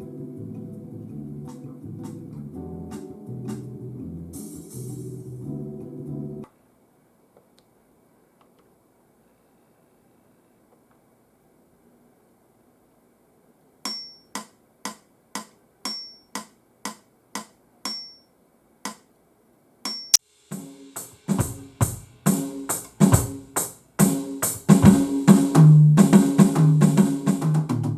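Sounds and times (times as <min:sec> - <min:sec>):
electronic drum kit playing: 0:00.0 - 0:06.2, 0:20.5 - 0:27.9.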